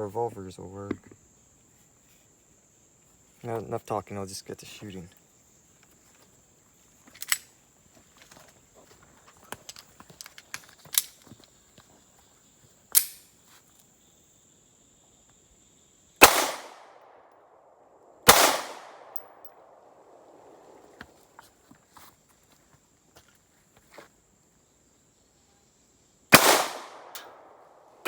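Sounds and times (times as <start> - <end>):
gun handling clicks and knocks: 7.0 - 7.6, 9.2 - 11.6, 12.9 - 13.3
pistol shots with echo: 16.2 - 16.9, 18.2 - 19.8, 26.3 - 27.5.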